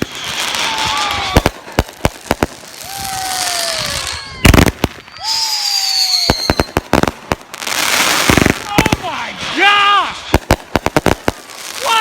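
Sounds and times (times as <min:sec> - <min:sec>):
falling firework whistles: 0:00.0 - 0:01.8, 0:02.7 - 0:07.0
fireworks bangs: 0:00.0 - 0:12.0
fireworks crackling hiss: 0:00.0 - 0:12.0.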